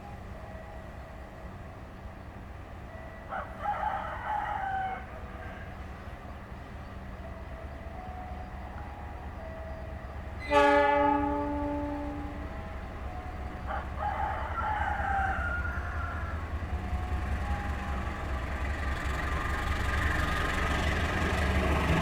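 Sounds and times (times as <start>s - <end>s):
rooster crowing: 3.3s - 5.8s, 13.6s - 17.0s
train horn blast: 10.4s - 13.1s.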